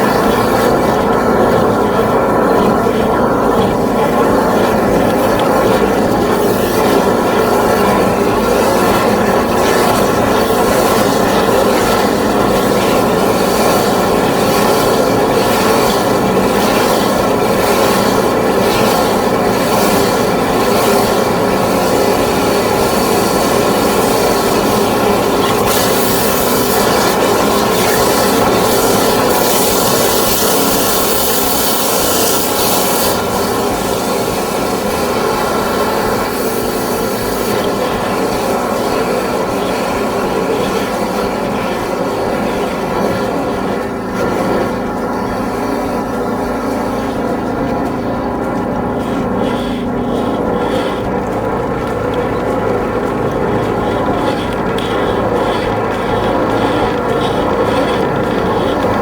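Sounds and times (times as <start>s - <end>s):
drain jetter machine hum: 0.0s - 59.0s
hiss of water jetting: 3.7s - 48.2s, 48.9s - 59.0s.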